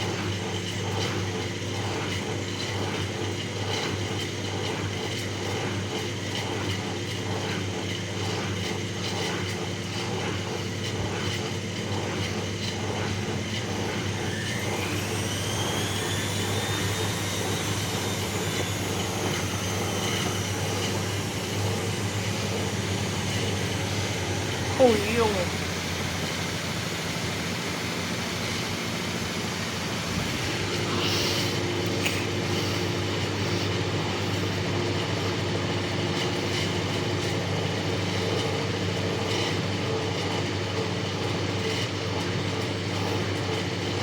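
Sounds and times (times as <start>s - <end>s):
washing machine humming and pulsing: 0.0s - 44.0s
motor whine rising in pitch: 13.5s - 37.4s.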